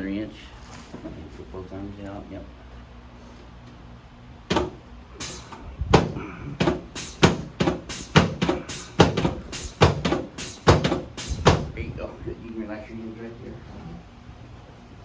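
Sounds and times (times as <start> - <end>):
sharp knocks on treatment table: 4.5 - 4.8.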